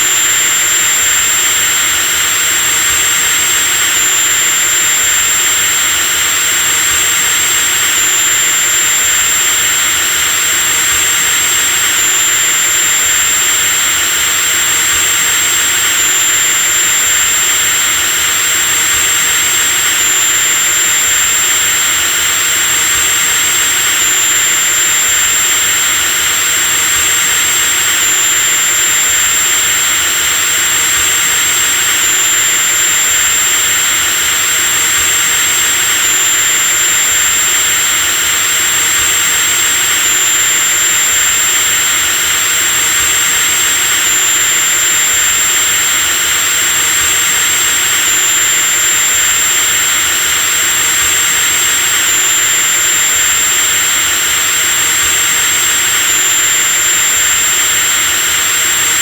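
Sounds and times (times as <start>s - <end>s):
electric drill whirring: 0.0s - 59.0s.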